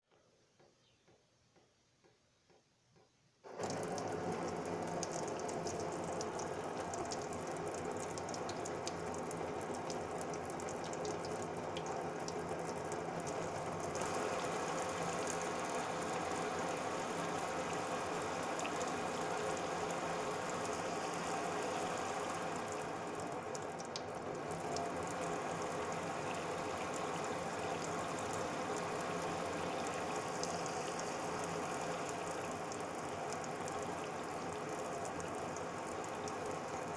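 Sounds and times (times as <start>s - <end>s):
water running: 3.4s - 36.9s.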